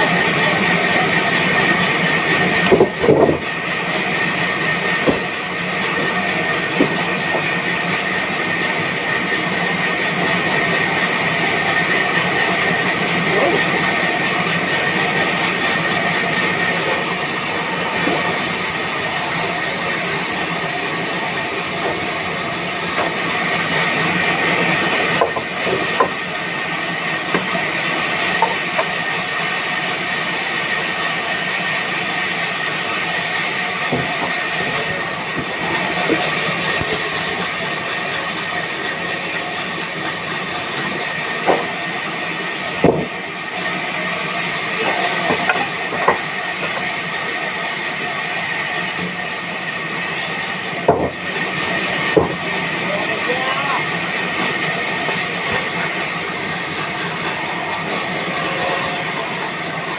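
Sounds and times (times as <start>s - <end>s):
high saw whine: 0.0s - 59.9s
sharp knocks: 5.0s - 5.4s
band saw hissing: 10.2s - 26.6s, 34.0s - 41.3s, 53.8s - 59.9s.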